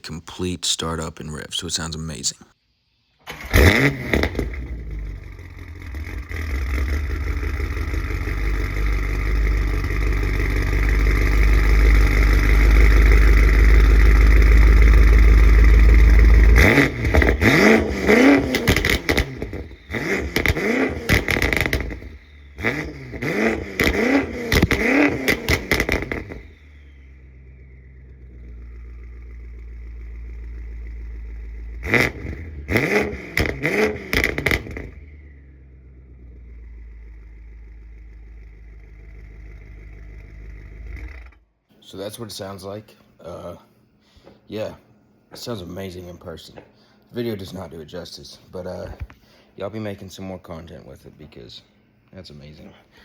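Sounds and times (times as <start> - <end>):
car engine idling and revving: 3.4 - 41.5.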